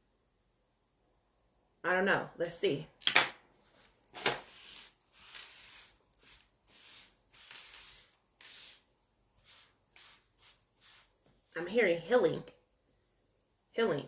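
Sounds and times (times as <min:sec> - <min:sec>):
cards being shuffled: 0:03.7 - 0:08.8.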